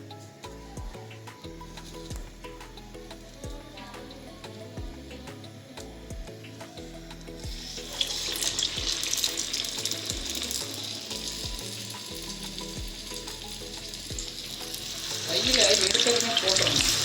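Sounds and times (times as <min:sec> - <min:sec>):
background music with beat: 0:00.0 - 0:17.0
food deep-frying in oil: 0:07.3 - 0:17.0.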